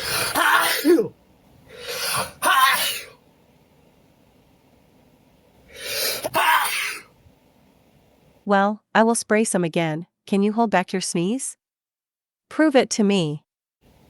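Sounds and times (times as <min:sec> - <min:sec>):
man sneezing: 0:00.0 - 0:03.2, 0:05.7 - 0:07.1.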